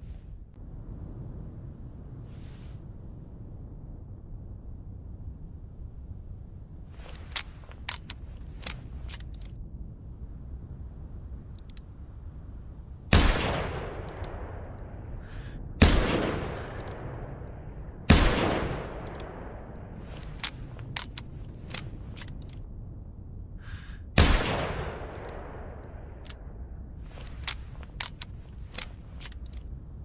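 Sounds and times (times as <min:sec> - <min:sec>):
light clicks: 0:07.0 - 0:09.6, 0:11.5 - 0:11.9, 0:14.0 - 0:14.9, 0:16.6 - 0:17.6, 0:18.8 - 0:22.7, 0:24.8 - 0:26.5, 0:27.1 - 0:29.8.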